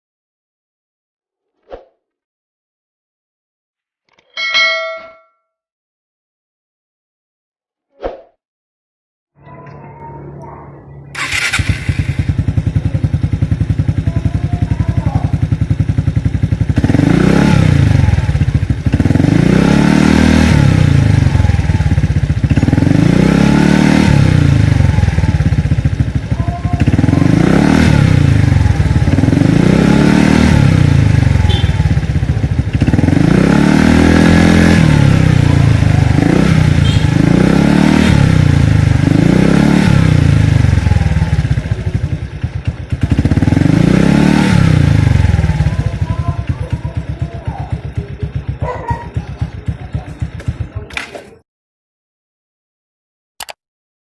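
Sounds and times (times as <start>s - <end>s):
scooter engine idling: 11.1s - 19.4s, 20.7s - 33.8s, 35.0s - 37.3s, 38.3s - 39.2s, 40.2s - 51.3s
scooter engine revving: 11.1s - 50.9s.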